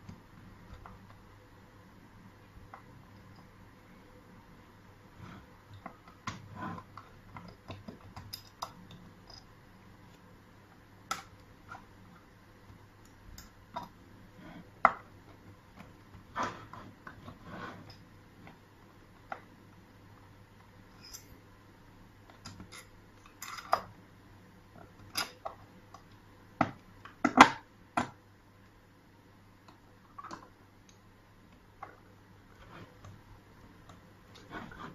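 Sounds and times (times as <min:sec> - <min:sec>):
small clicks and knocks: 0:05.7 - 0:09.5.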